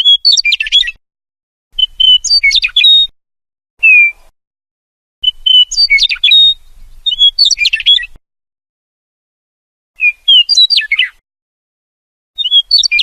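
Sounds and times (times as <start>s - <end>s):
meadowlark singing: 0.0s - 1.0s, 1.8s - 3.1s, 3.8s - 4.3s, 5.2s - 8.2s, 10.0s - 11.2s, 12.4s - 13.0s.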